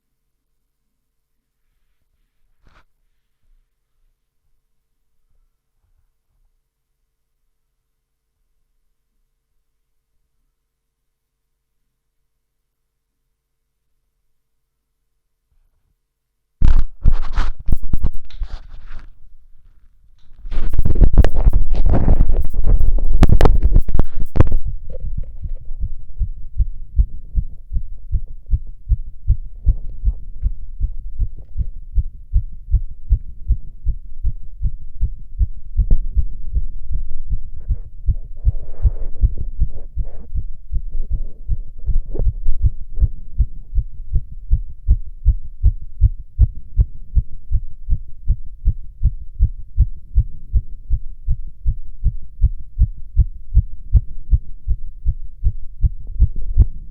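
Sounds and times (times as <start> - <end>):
heartbeat thumps: 16.6 - 19.1, 20.4 - 56.9.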